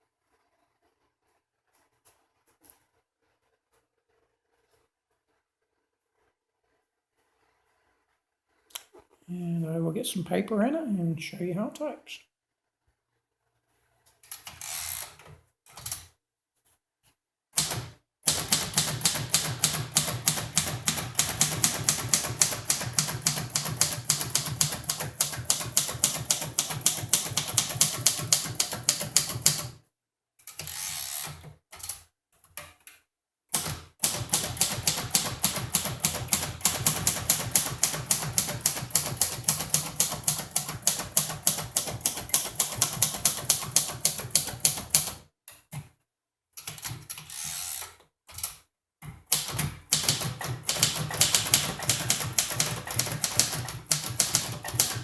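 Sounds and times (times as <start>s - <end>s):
typewriter key strikes: 17.6s - 29.7s, 34.0s - 45.1s, 49.3s - 55.0s.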